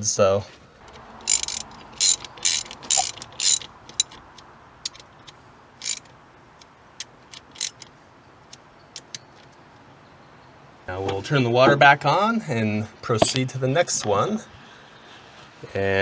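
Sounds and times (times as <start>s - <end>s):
hand ratchet clicking: 0.9s - 4.2s, 5.8s - 6.1s, 7.3s - 7.9s.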